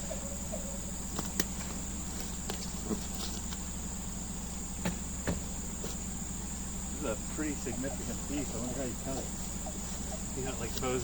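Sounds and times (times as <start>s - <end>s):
high-pitched insect chorus: 0.0s - 11.0s.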